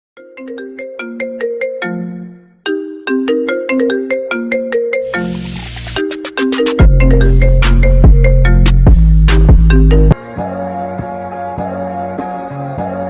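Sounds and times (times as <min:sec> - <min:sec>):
bright mallet-like melody: 0:00.2 - 0:10.2
heavy electronic drop: 0:05.1 - 0:10.1.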